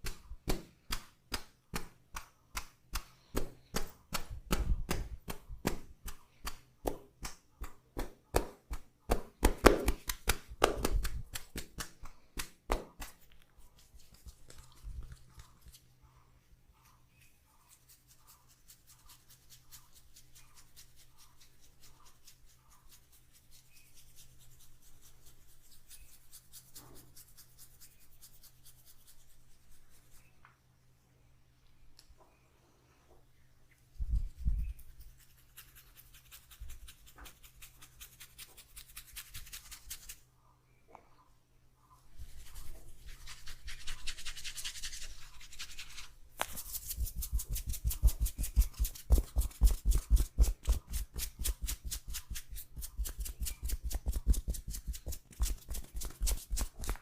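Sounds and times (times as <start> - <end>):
hands slapping in massage: 0.0 - 13.4, 45.9 - 57.0.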